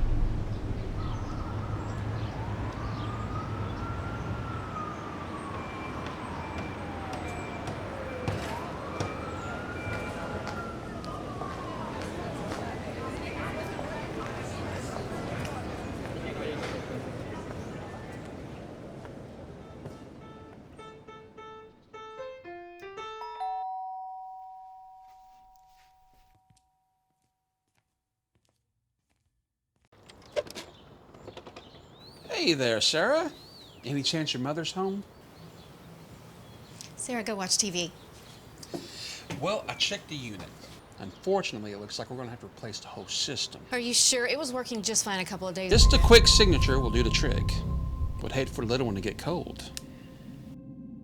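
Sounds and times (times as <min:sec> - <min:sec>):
siren wailing: 0:00.0 - 0:13.0, 0:45.7 - 0:50.5
electronic doorbell chime: 0:23.2 - 0:26.8.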